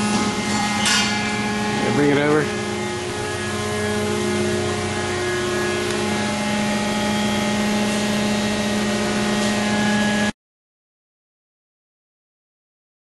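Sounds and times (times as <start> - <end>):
machine hum with held tones: 0.0 - 10.4.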